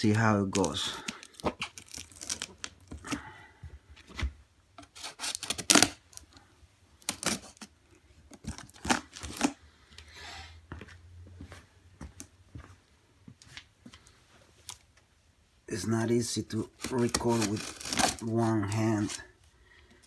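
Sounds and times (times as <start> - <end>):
cardboard box ripping and scraping: 4.9 - 6.0, 7.1 - 7.6, 16.6 - 19.2.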